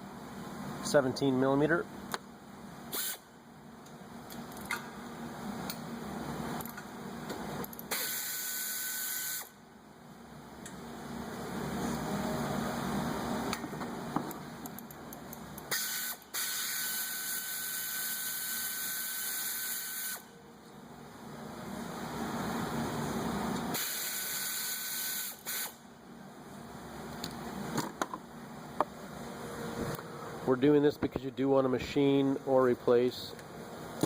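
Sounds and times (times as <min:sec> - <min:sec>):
air exhaust hiss: 0:02.9 - 0:03.3, 0:23.0 - 0:25.8
pneumatic air ratchet running: 0:02.9 - 0:03.3, 0:07.8 - 0:09.6, 0:15.7 - 0:20.3, 0:23.7 - 0:25.8.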